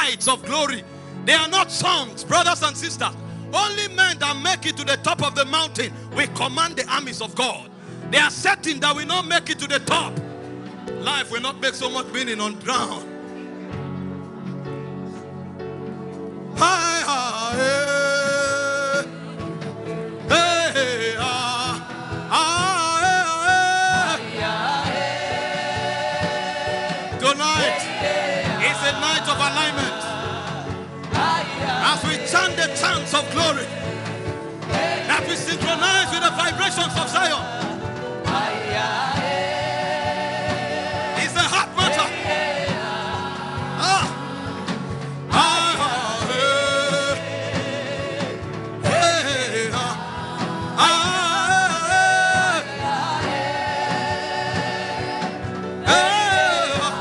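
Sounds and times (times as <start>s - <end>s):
instrumental backing with beat: 13.1s - 57.0s.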